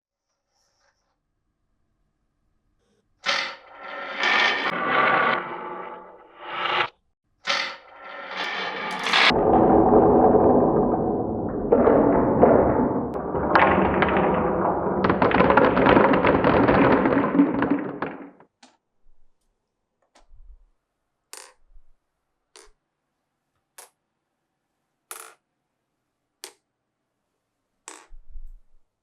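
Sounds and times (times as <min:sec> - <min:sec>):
marbles rolling down wooden track: 0:03.2 - 0:06.9, 0:07.5 - 0:18.4.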